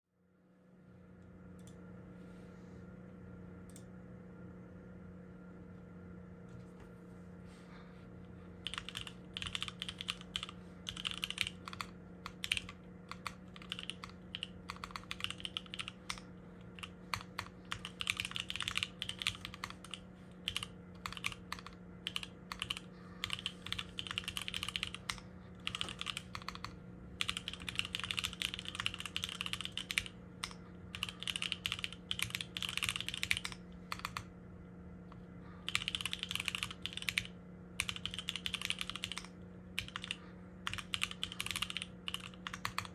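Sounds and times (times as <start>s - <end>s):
faint steady hum: 0.1s - 42.9s
mechanical keyboard typing: 8.6s - 34.3s, 35.7s - 42.9s.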